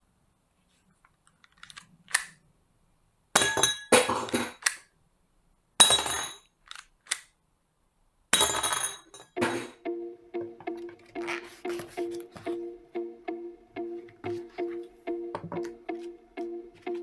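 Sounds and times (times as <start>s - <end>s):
toy pistol clacking and clinking: 6.6s - 7.3s.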